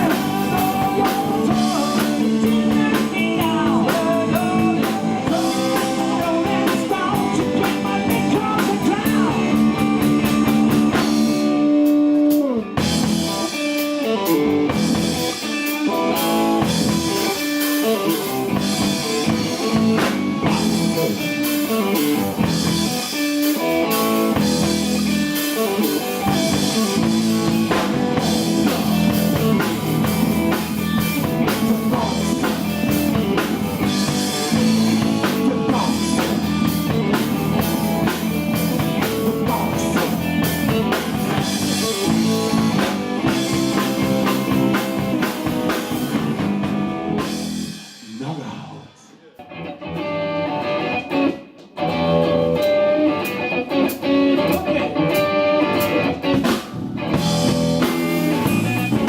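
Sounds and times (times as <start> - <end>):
live blues-rock band: 0.0 - 48.3, 49.4 - 59.0.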